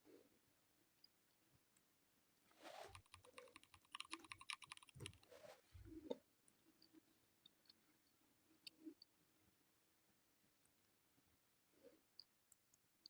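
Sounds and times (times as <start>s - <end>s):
mechanical keyboard clicks: 2.9s - 5.2s.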